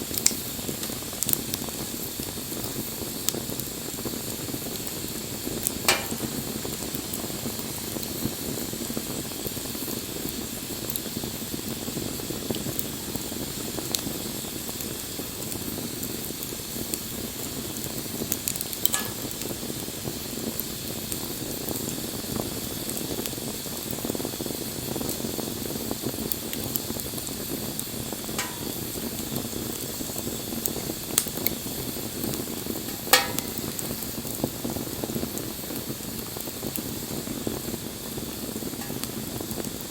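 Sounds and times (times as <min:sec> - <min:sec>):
fire popping: 0:00.0 - 0:39.9
wood fire crackling: 0:00.0 - 0:39.9.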